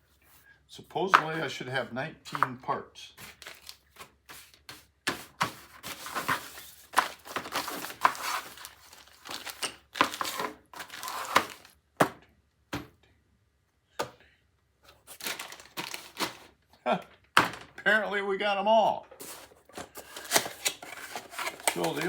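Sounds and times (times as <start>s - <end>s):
plastic bags crinkling: 3.3s - 4.2s, 5.8s - 11.7s, 15.0s - 16.6s, 19.2s - 22.0s.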